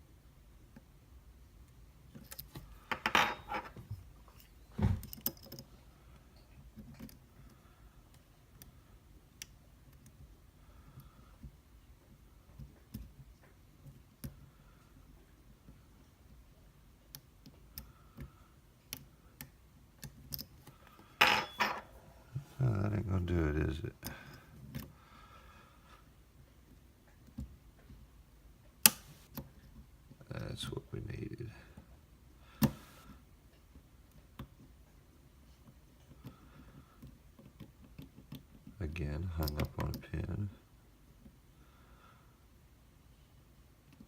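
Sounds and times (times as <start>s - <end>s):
lock picks clicking in a lock: 5.0s - 5.7s.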